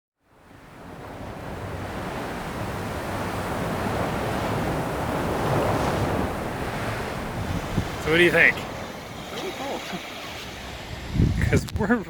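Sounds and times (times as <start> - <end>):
surf washing onto beach: 0.3 - 12.0
wind rumbling on microphone: 0.4 - 12.0.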